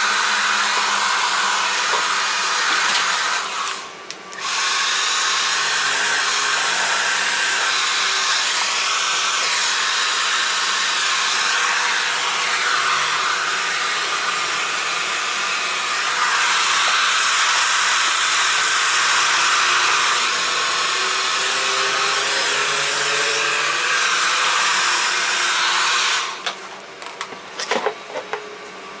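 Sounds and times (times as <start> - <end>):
hair dryer blowing: 0.0 - 26.6.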